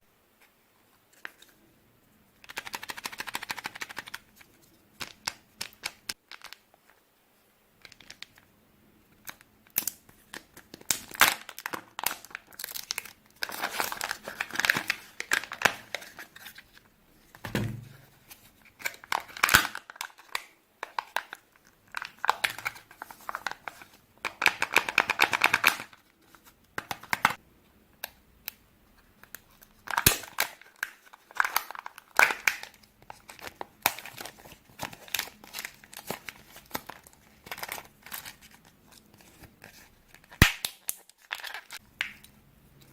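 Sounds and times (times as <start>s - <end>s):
soft low thump: 17.5s - 18.0s
wrappers crinkling and tearing: 29.4s - 41.8s.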